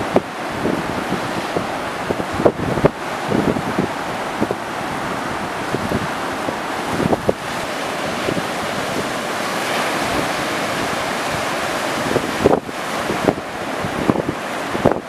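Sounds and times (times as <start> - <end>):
ocean surf breaking: 0.0 - 15.0
wind buffeting microphone: 0.0 - 15.0.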